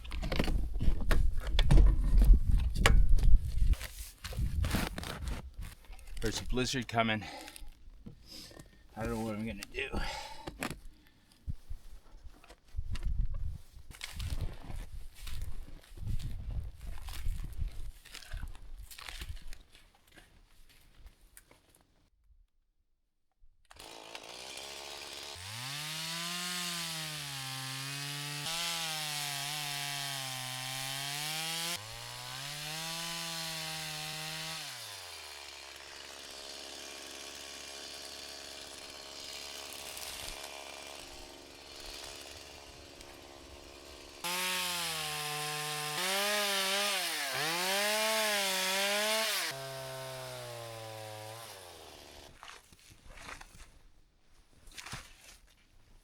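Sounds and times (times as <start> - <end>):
chainsaw cutting wood: 23.7 - 53.5.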